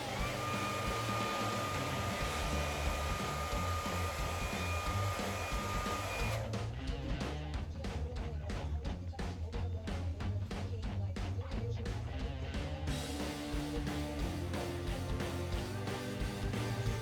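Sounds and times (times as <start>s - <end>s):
hair dryer blowing: 0.0s - 6.5s
background music with bass beat: 0.0s - 17.0s.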